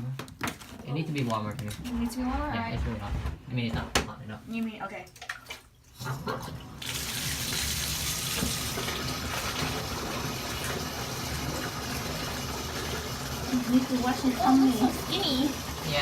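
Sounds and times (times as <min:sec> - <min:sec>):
water running from a tap: 0:05.9 - 0:16.0.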